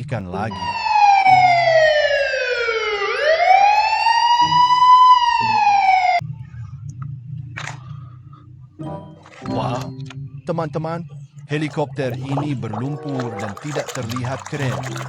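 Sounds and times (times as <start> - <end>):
police siren wailing: 0.5 - 6.2.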